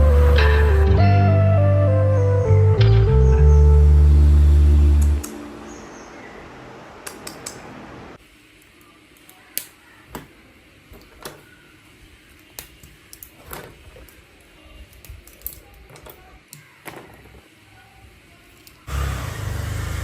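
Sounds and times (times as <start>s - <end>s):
small objects clicking and tapping: 12.3s - 17.4s.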